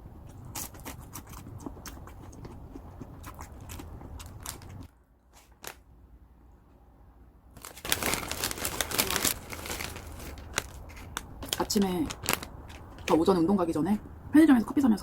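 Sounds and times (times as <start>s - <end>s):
close-up eating: 0.0s - 5.7s
plastic wrapper crinkling and tearing: 3.7s - 5.8s, 7.6s - 13.1s.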